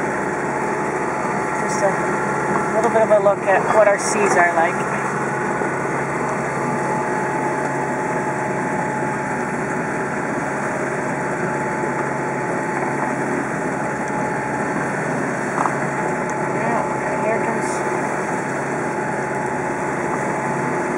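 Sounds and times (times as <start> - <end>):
boat engine droning: 0.0 - 20.9.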